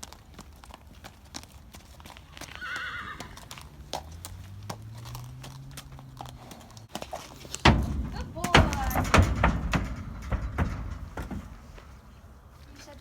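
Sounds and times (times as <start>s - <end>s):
hooves knocking: 0.0s - 13.0s
horse whinnying: 2.3s - 3.7s.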